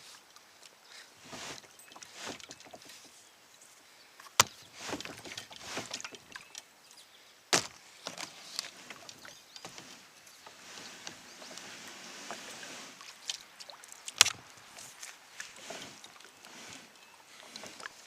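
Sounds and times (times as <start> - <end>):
paddle swishing and splashing: 1.2 - 3.1, 4.4 - 6.6, 8.2 - 18.0.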